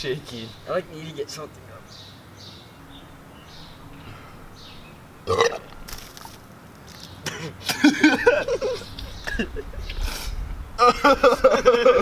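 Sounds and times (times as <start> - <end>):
man belching: 5.3 - 5.8.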